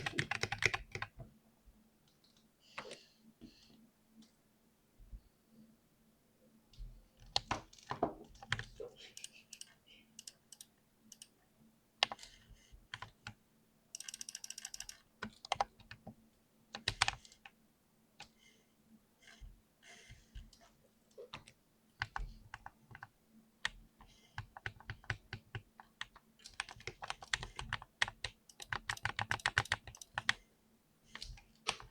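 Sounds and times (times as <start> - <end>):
computer keyboard typing: 0.0 - 1.2, 7.2 - 11.3, 12.0 - 17.6, 21.3 - 23.8, 24.4 - 30.4, 31.1 - 31.9.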